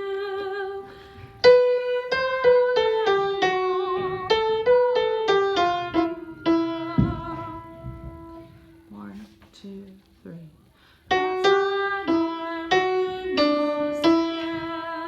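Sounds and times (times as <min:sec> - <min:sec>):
keyboard melody: 0:00.8 - 0:08.8.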